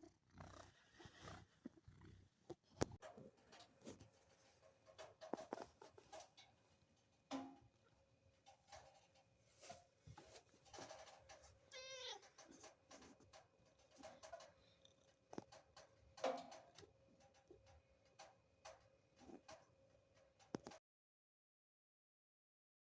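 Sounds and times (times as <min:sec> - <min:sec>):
faint clicks: 0:10.3 - 0:20.8
cat meowing: 0:11.7 - 0:12.2.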